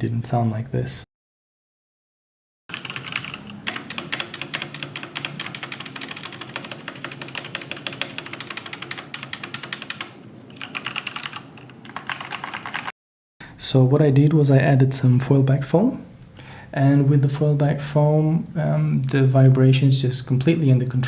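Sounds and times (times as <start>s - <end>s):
fast typing on hollow keyboard: 2.7s - 12.9s.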